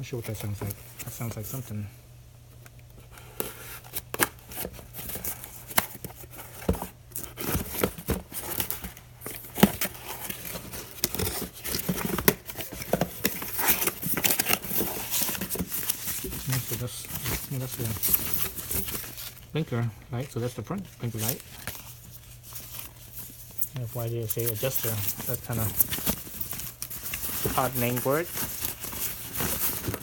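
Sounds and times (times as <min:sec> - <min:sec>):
packaging tearing and crinkling: 0:07.1 - 0:19.6, 0:21.0 - 0:30.0.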